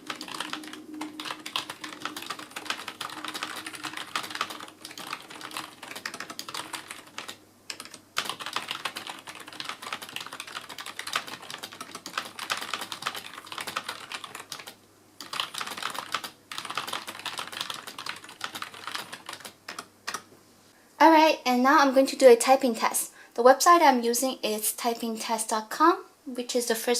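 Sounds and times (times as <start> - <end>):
keyboard typing clicks: 0.0 - 20.3.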